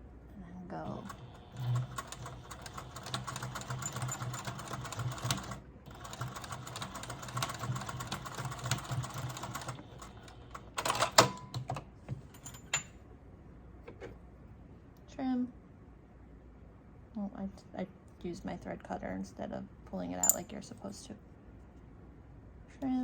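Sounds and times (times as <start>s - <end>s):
sewing machine stitching: 0.8s - 11.3s.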